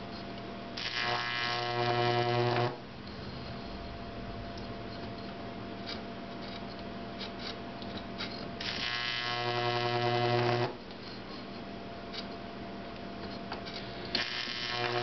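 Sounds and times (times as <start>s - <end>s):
faint electrical crackles: 0.1s - 6.8s, 13.8s - 15.0s
harsh electrical arc buzz: 0.7s - 6.6s, 8.6s - 10.8s, 13.9s - 15.0s
transformer humming: 2.8s - 6.0s.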